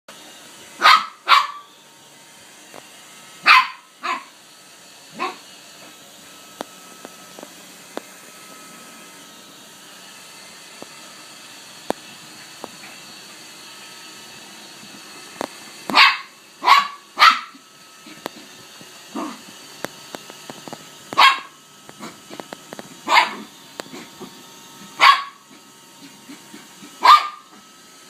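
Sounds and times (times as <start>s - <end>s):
dog barking: 0.8s - 1.7s, 3.4s - 4.3s, 5.2s - 5.4s, 15.9s - 17.6s, 21.2s - 22.2s, 23.1s - 23.5s, 25.0s - 25.4s, 27.0s - 27.5s.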